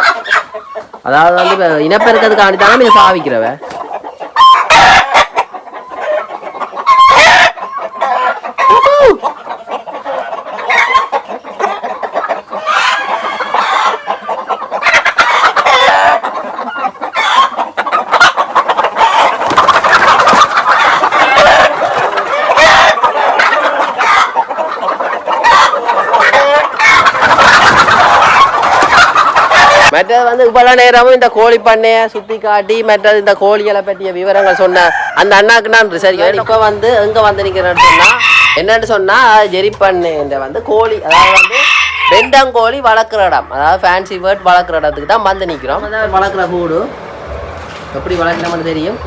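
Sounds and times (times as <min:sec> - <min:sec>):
roosters crowing: 0:00.0 - 0:30.0, 0:34.1 - 0:49.0
chickens clucking: 0:00.0 - 0:49.0.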